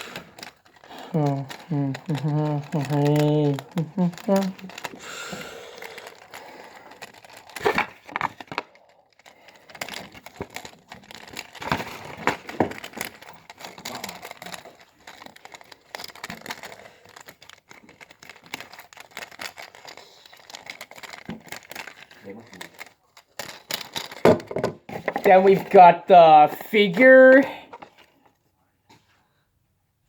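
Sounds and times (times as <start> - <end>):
packaging crinkling: 0.0 - 28.3.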